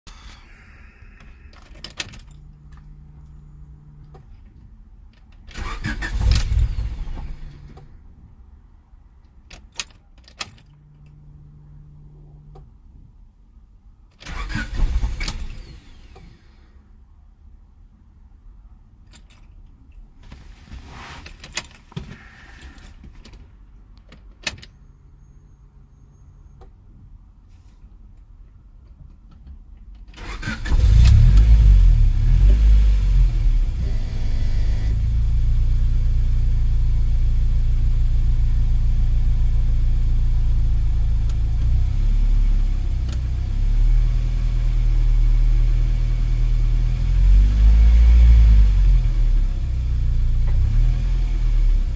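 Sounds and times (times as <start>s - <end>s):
car engine starting and idling: 0.1s - 8.5s, 14.1s - 17.0s, 30.0s - 51.9s.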